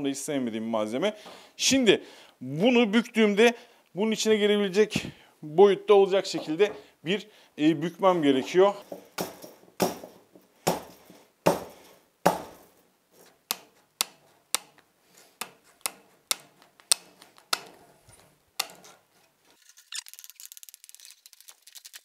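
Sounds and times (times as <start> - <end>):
metal wire clinking and rattling: 8.8 - 10.4, 15.6 - 21.6.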